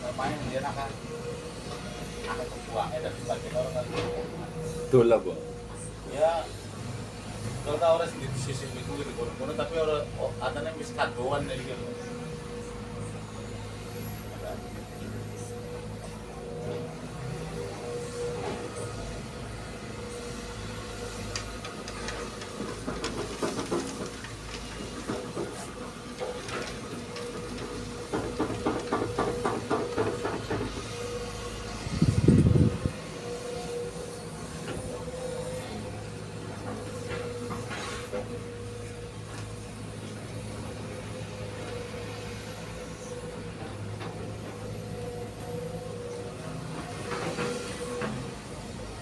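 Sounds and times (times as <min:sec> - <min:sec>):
diesel machinery rumbling: 0:00.0 - 0:49.0.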